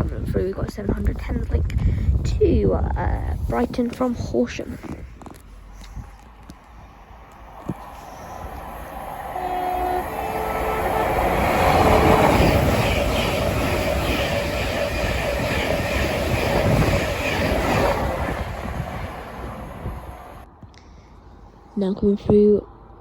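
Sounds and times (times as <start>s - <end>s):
train passing at speed: 5.6s - 20.5s
train horn: 7.8s - 12.7s.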